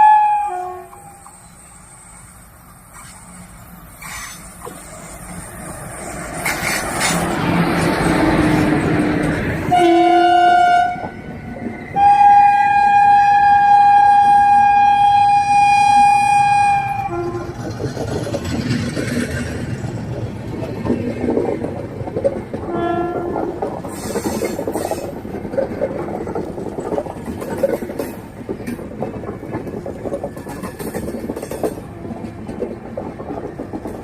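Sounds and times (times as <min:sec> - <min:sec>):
shrill locomotive air horn: 0:00.0 - 0:01.4, 0:09.7 - 0:11.1, 0:12.0 - 0:17.6, 0:22.7 - 0:23.4
train rumbling and clattering: 0:00.0 - 0:34.0.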